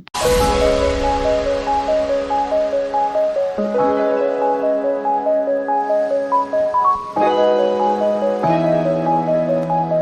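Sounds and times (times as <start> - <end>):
gentle keyboard tune: 2.5 - 10.0.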